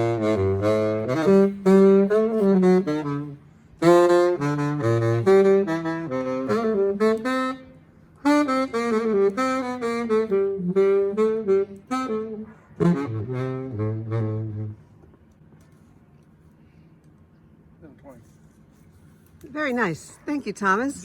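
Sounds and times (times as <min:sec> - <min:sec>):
solo saxophone melody: 0:00.0 - 0:15.0.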